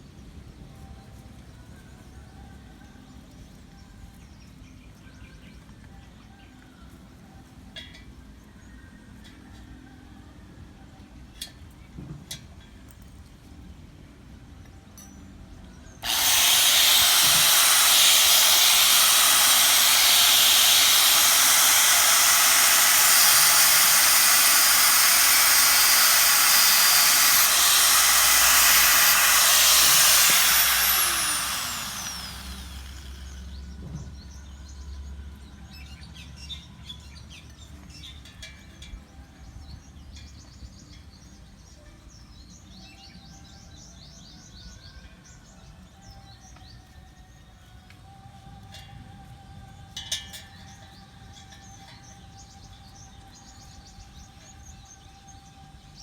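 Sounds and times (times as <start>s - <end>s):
angle grinder on metal: 16.0s - 33.6s
grinder spinning down whine: 16.0s - 33.6s.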